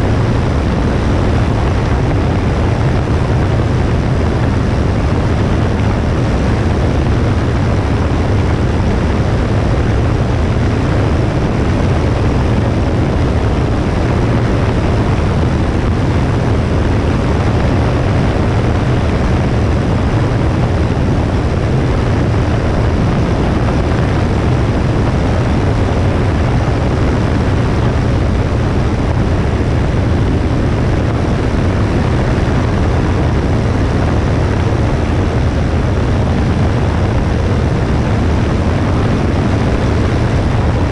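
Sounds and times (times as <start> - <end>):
air rushing: 0.0 - 40.9
aircraft engine and propeller drone: 0.0 - 40.9.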